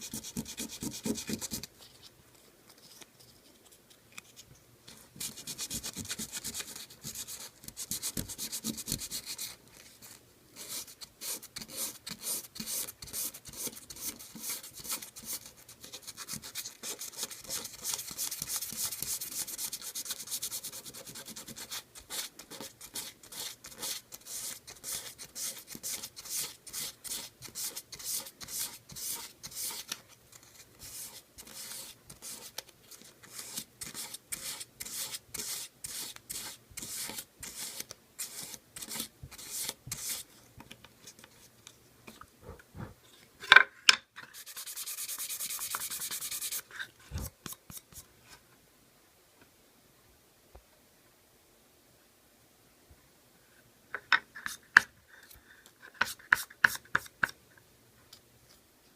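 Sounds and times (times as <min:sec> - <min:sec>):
sandpaper rubbing on wood: 0:44.4 - 0:46.7.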